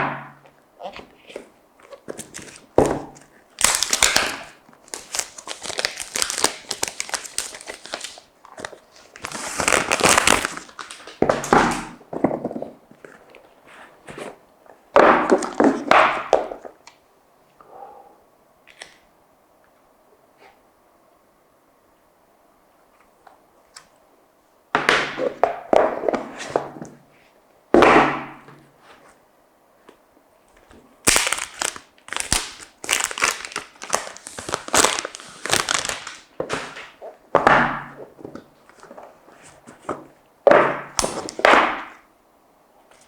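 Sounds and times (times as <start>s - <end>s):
wrapping crinkling and tearing: 3.5s - 11.8s, 31.0s - 37.2s
packaging scraping and rustling: 4.8s - 11.9s, 31.2s - 37.2s.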